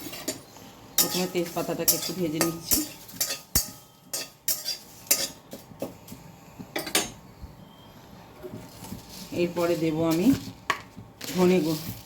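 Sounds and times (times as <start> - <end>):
spatula scraping a pan: 0.0 - 6.0.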